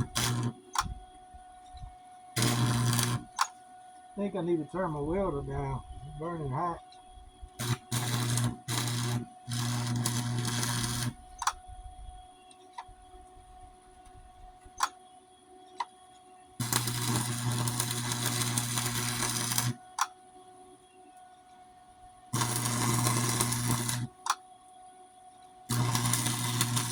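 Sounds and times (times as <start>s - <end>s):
arc welder crackling buzz: 0.0s - 3.6s, 7.4s - 11.7s, 16.5s - 20.2s, 22.3s - 24.4s, 25.6s - 26.9s
sharp clicks: 2.4s - 3.6s, 11.0s - 11.6s.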